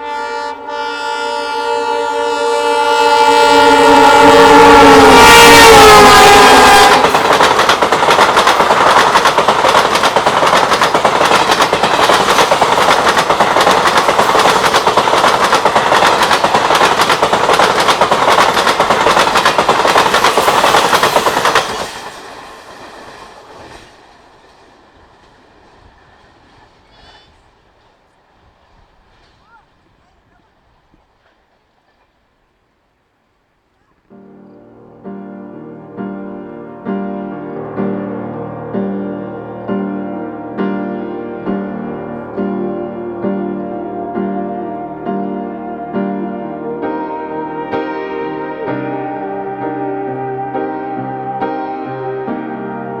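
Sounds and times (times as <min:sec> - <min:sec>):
train horn: 0:00.0 - 0:08.0, 0:34.2 - 0:53.0
diesel locomotive passing: 0:00.0 - 0:32.4, 0:34.3 - 0:53.0
train wheels clattering over rail joints: 0:06.9 - 0:28.0.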